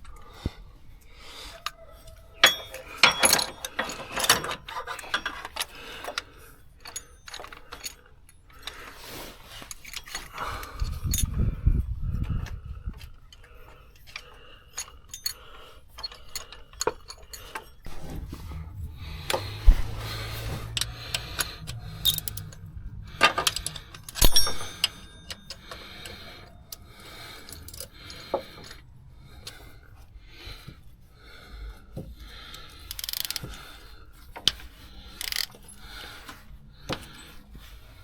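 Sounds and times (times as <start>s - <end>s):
metal tools clinking: 1.5s - 11.5s, 12.4s - 29.8s, 32.3s - 38.0s
low steady hum: 16.1s - 32.9s.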